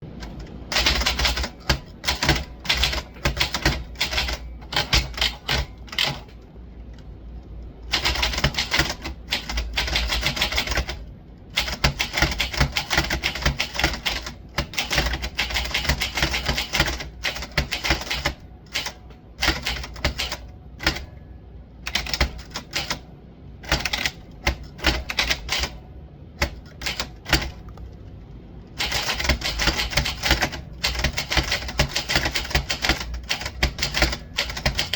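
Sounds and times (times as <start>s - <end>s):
typewriter keystrokes: 0.0s - 6.4s, 7.9s - 21.1s, 21.8s - 25.8s, 26.4s - 27.9s, 28.8s - 34.9s.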